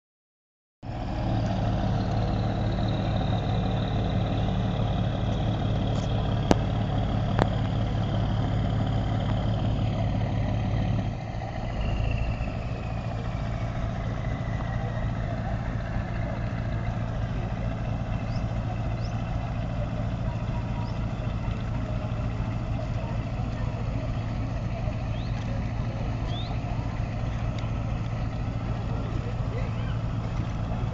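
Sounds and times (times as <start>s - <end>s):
boat motor running: 0.8s - 30.9s.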